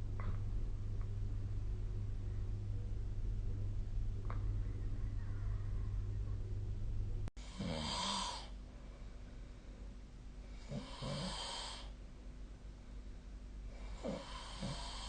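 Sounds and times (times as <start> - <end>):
steady low hum: 0.0 - 15.0
person snoring: 7.4 - 8.6, 10.6 - 12.0, 13.8 - 15.0.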